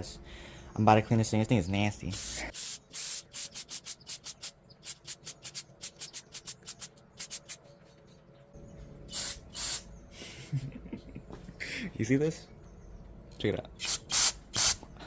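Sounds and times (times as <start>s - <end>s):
short hissing strokes: 2.1s - 7.6s, 9.1s - 9.9s
aerosol spray bursts: 2.2s - 7.6s, 9.1s - 9.9s.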